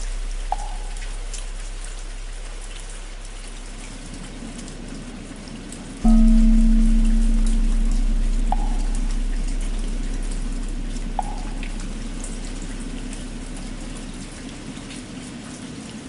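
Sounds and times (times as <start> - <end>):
deep bell ringing: 0.0 - 3.9, 6.0 - 14.9
drip-like ticks: 0.0 - 16.0
rain pattering: 0.0 - 16.0.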